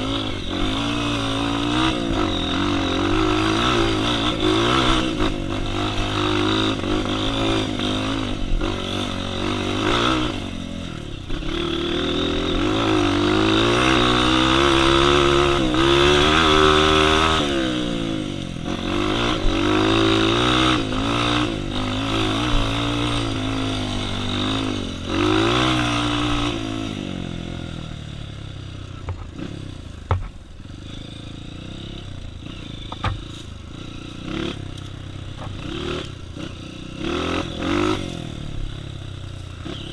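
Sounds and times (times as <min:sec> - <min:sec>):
motorcycle engine revving: 0:00.0 - 0:39.9
sharp knocks and scrapes: 0:30.0 - 0:30.4, 0:32.9 - 0:33.6.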